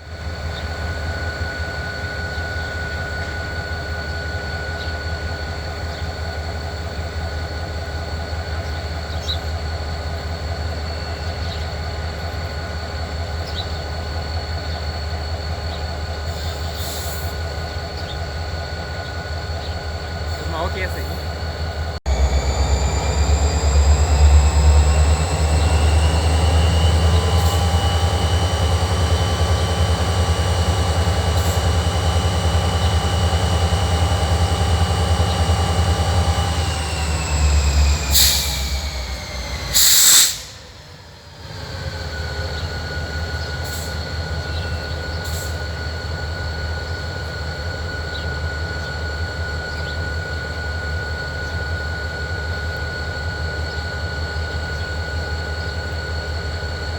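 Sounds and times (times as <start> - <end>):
diesel locomotive engine rumble: 0.0 - 56.9
turbocharger whine: 0.1 - 56.9
air hissing bursts: 39.7 - 40.7.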